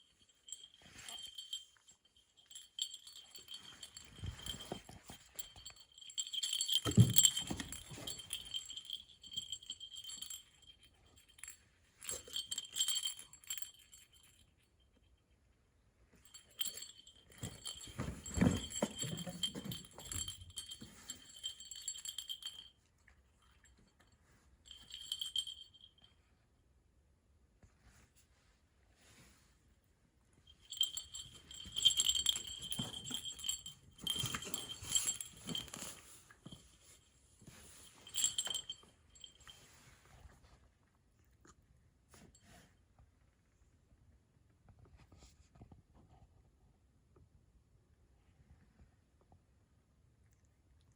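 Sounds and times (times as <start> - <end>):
small bell jingling on cat collar: 0.0 - 15.0, 16.2 - 26.1, 30.5 - 40.3.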